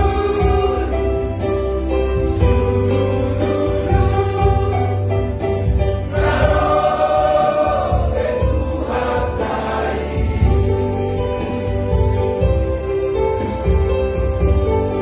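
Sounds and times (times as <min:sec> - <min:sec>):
voices singing in harmony: 0:00.0 - 0:01.8, 0:02.6 - 0:11.6
instrumental accompaniment with bass: 0:00.0 - 0:15.0.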